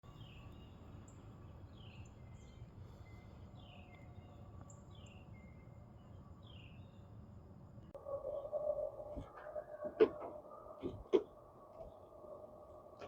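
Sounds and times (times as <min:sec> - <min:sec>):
faint birdsong: 0:00.1 - 0:13.0
low background rumble: 0:07.6 - 0:13.0.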